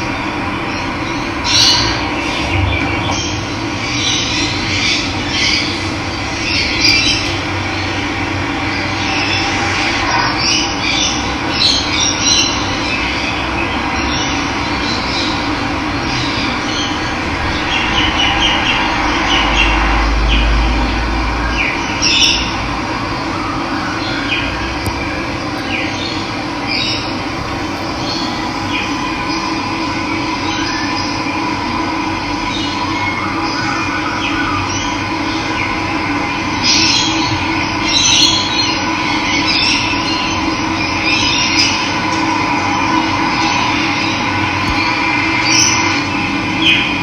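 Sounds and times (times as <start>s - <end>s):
low rumble: 1.7s - 6.4s, 14.6s - 23.6s, 24.4s - 32.4s
birds chirping: 23.2s - 31.4s.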